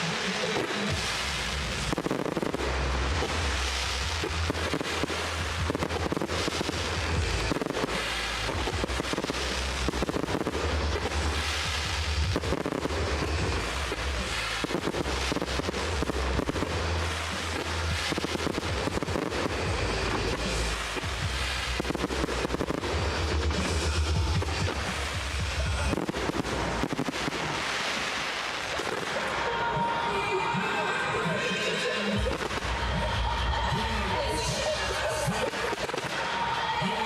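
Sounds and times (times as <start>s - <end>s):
fireworks bangs: 0.0s - 37.0s
fireworks crackling: 0.0s - 37.0s
low rumble: 1.0s - 27.5s.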